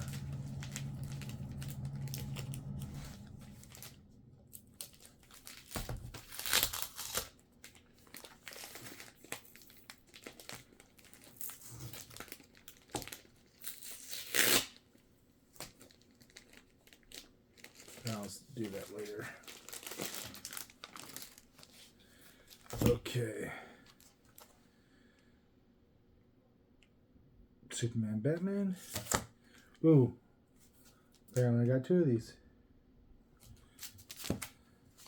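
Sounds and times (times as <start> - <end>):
packaging crinkling: 0.0 - 14.8, 15.6 - 22.9, 33.4 - 35.0
packaging tearing: 4.5 - 14.8, 15.6 - 21.8.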